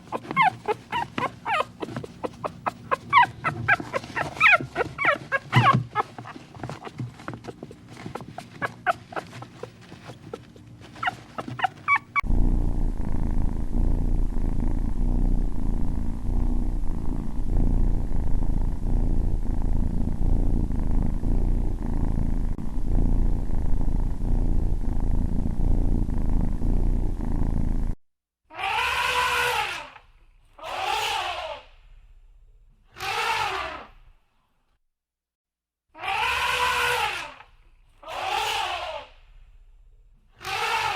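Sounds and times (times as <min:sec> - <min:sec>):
kitten meowing: 0:00.0 - 0:06.9
puppy whimpering: 0:00.0 - 0:12.2
kitten purring: 0:00.0 - 0:28.0.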